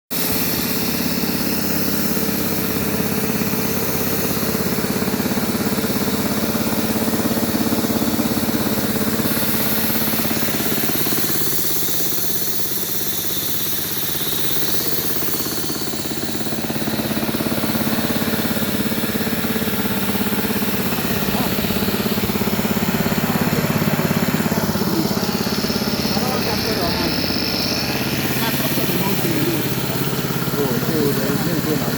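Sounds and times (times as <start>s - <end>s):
air conditioning unit humming: 15.0s - 31.9s.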